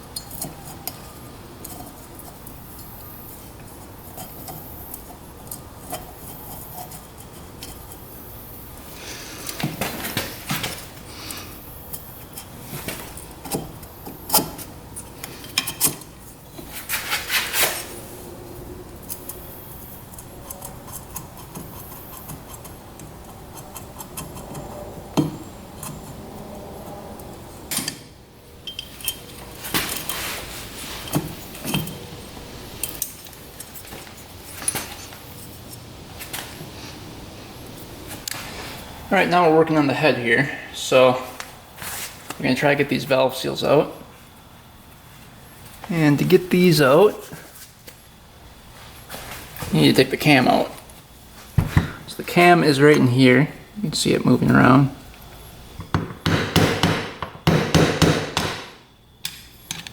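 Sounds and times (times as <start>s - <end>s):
metal parts and tools clinking: 28.6s - 32.2s.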